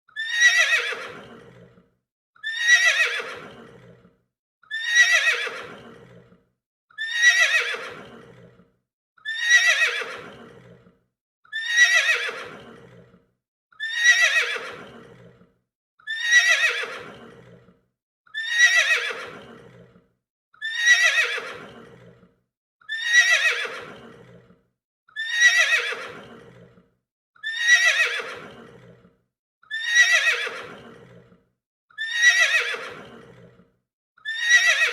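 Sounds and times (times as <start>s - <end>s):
horse whinnying: 0.2s - 1.8s, 2.4s - 4.0s, 4.7s - 6.3s, 7.0s - 8.6s, 9.2s - 10.9s, 11.5s - 13.1s, 13.8s - 15.4s, 16.1s - 17.7s, 18.4s - 19.9s, 20.6s - 22.2s, 22.9s - 24.5s, 25.2s - 26.8s, 27.4s - 29.0s, 29.7s - 31.3s, 32.0s - 33.6s, 34.2s - 34.9s.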